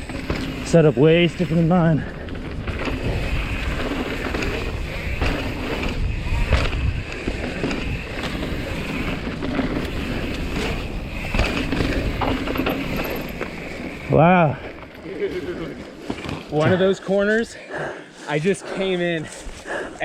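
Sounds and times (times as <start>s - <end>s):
wind rushing over microphone: 0.0s - 14.6s
bike knocking and rattling: 0.0s - 17.0s
tyres rolling on dirt: 0.0s - 17.5s.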